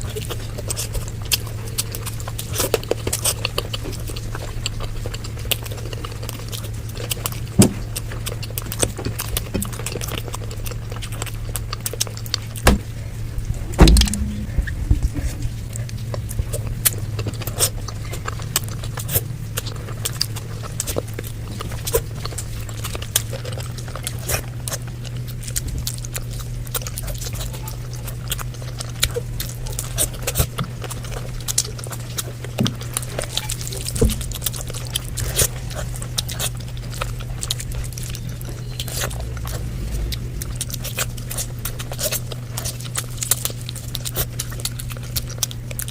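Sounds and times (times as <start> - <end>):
chewing and mouth clicks: 0.0 - 45.9
low hum: 6.6 - 45.4
heavy thump: 12.6 - 12.9, 13.6 - 15.6.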